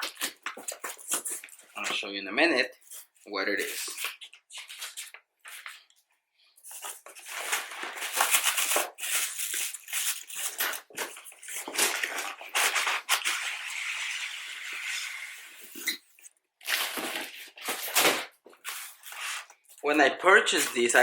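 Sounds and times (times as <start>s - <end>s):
packaging rustling and scraping: 0.0s - 2.0s, 6.6s - 19.8s.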